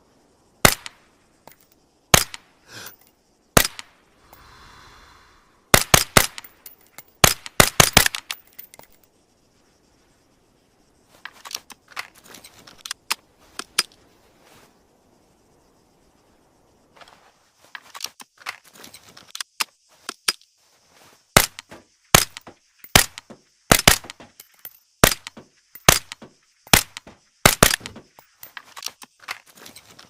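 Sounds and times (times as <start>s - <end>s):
steady high hiss: 0.0s - 17.8s
pistol shots: 22.2s - 24.2s.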